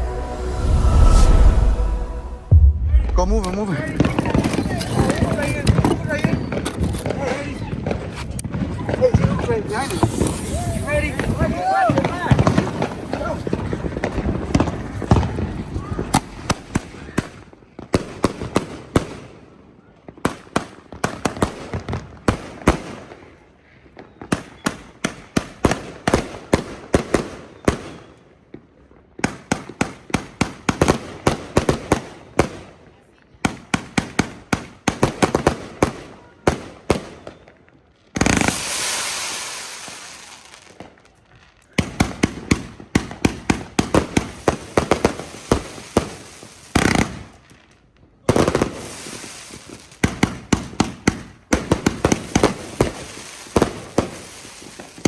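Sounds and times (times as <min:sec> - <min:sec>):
fireworks firing sharp shots: 0:08.4 - 0:15.4, 0:38.2 - 0:40.6, 0:48.3 - 0:55.0
firework hissing crackle: 0:09.6 - 0:13.7, 0:38.2 - 0:40.7, 0:48.7 - 0:50.0, 0:52.1 - 0:55.0.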